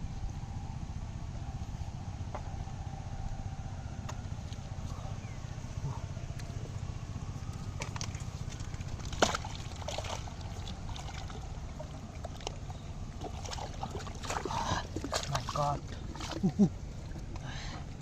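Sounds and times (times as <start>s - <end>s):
steady low rumble: 0.0s - 18.0s
water sloshing and trickling: 1.5s - 18.0s
small water splashes: 7.3s - 18.0s.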